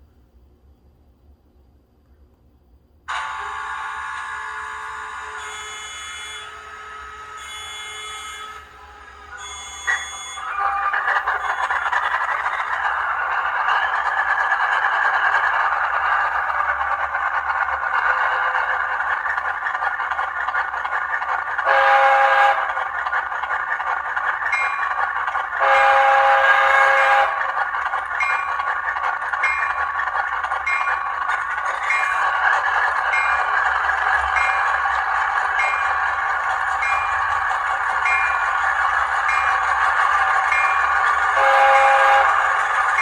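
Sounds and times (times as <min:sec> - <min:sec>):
locomotive horn blasts: 0:03.1 - 0:11.1, 0:21.6 - 0:22.8, 0:25.6 - 0:27.5, 0:41.1 - 0:43.0.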